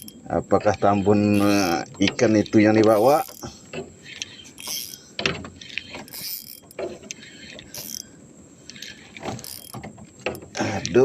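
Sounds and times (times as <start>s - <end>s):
fishing reel clicking and whirring: 0.0s - 11.0s.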